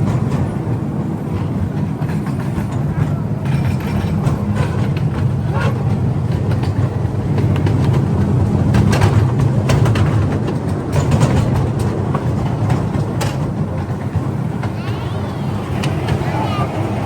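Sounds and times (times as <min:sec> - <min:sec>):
carriages clicking and rattling: 0:00.0 - 0:17.0
ride train drone: 0:00.0 - 0:17.0.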